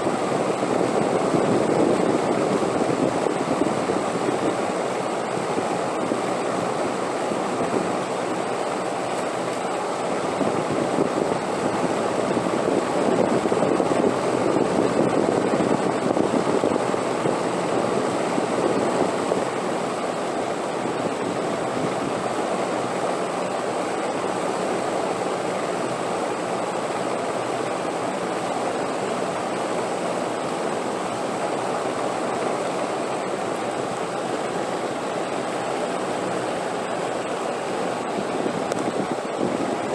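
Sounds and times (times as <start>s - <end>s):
wind blowing: 33.2s - 39.9s.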